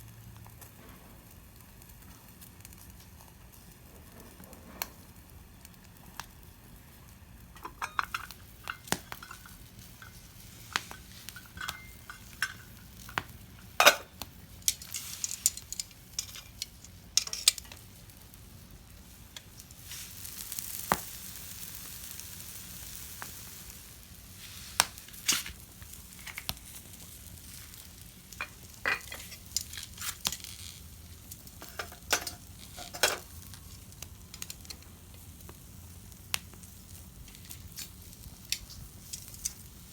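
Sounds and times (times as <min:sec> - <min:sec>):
faint sizzling: 0:00.0 - 0:39.9
wood fire clicks and pops: 0:04.3 - 0:06.5, 0:07.5 - 0:18.3, 0:24.8 - 0:39.9.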